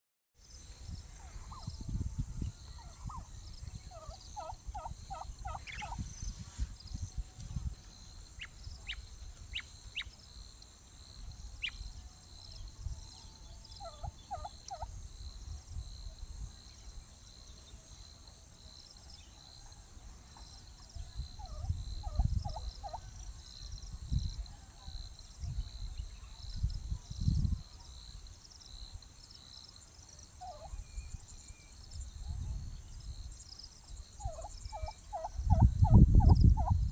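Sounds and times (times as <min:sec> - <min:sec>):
turkey gobbling: 0:03.9 - 0:06.0, 0:13.8 - 0:14.9, 0:21.4 - 0:23.0, 0:34.2 - 0:36.8.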